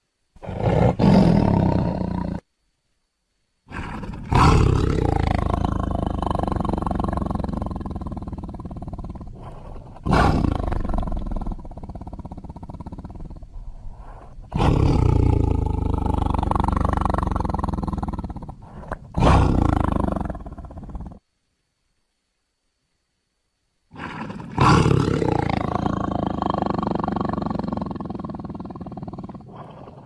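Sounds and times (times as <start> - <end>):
deep animal roars: 3.7 - 21.2, 23.9 - 30.0.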